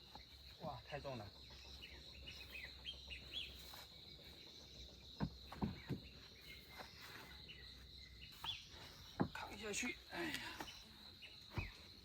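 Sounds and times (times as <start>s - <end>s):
bird chirps: 0.0s - 12.0s
dull thuds: 5.1s - 7.0s, 8.4s - 9.6s, 11.4s - 12.0s.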